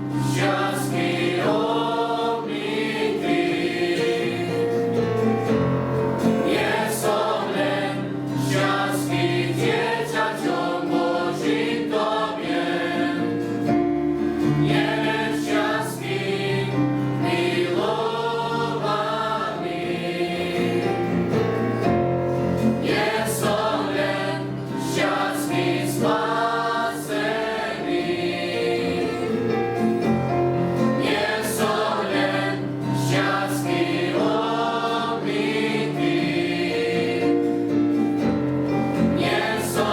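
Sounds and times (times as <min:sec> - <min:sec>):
youth choir singing a hymn: 0:00.0 - 0:39.9.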